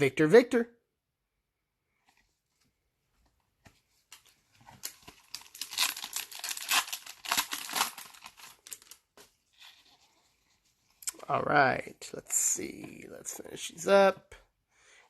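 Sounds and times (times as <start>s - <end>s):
foil wrapper crinkling and tearing: 4.8s - 9.0s.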